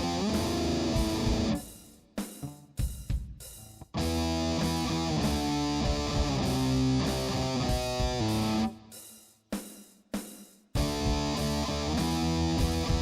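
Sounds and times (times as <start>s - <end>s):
electric guitar music: 0.0s - 1.7s, 3.8s - 8.8s, 10.8s - 13.0s.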